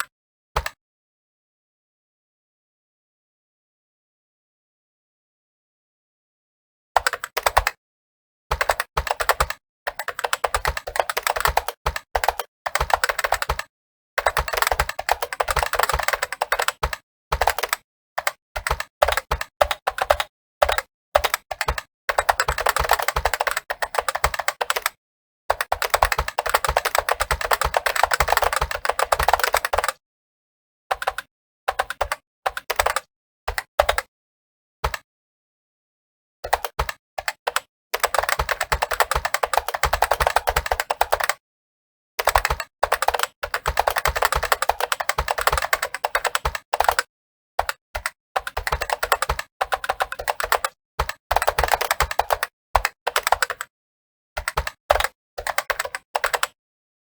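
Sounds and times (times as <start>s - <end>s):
fast typing on keyboard: 7.0s - 7.8s, 8.5s - 30.0s, 30.9s - 34.1s, 34.8s - 35.0s, 36.4s - 41.4s, 42.2s - 53.7s, 54.4s - 56.6s.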